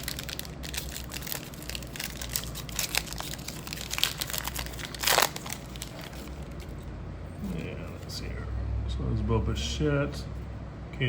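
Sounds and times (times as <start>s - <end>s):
cards and packaging crinkling: 0.0s - 6.8s.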